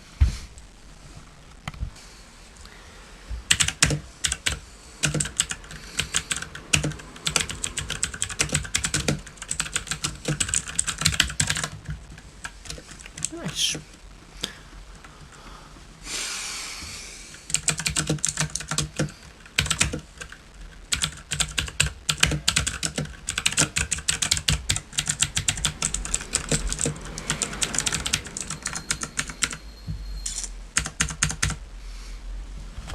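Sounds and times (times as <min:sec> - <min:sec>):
mechanical keyboard typing: 0:03.5 - 0:13.4, 0:17.4 - 0:29.6, 0:30.3 - 0:31.6.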